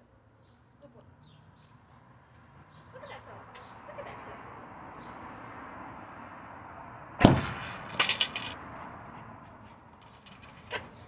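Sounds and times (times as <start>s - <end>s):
loud thump: 7.2s - 8.6s
sharp clicks and rattles: 7.2s - 8.6s, 10.0s - 11.0s.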